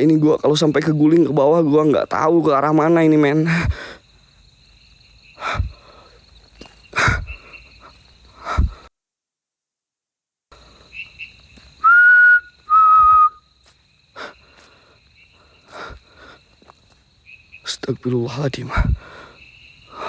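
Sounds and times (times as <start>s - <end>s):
night insects chirring: 0.0s - 8.9s, 10.5s - 20.0s
whistled notes: 11.8s - 13.4s.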